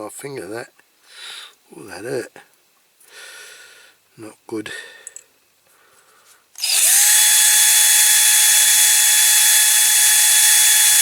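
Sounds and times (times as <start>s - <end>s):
wire brush drill stripping paint: 6.6s - 11.0s.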